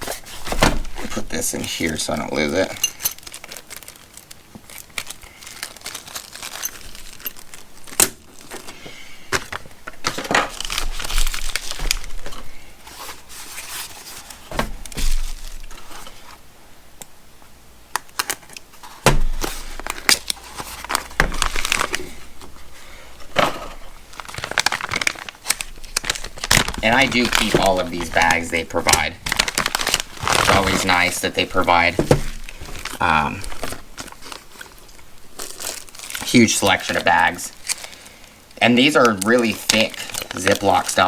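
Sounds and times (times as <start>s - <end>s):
plastic bags crinkling: 0.0s - 16.4s, 18.0s - 41.0s
small parts clicking and clinking: 2.7s - 5.1s.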